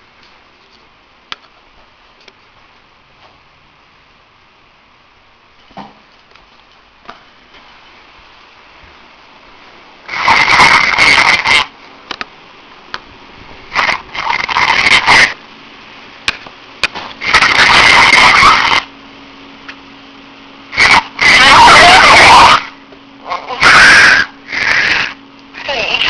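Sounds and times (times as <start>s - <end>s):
person snoring over phone: 10.1s - 11.7s, 13.8s - 15.4s, 17.2s - 18.9s, 20.7s - 22.7s, 23.3s - 26.0s.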